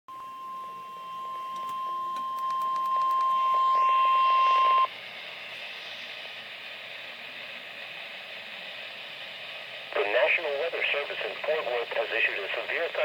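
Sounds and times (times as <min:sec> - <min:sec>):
steady alarm tone: 0:00.1 - 0:05.0
radio hiss: 0:03.5 - 0:13.0.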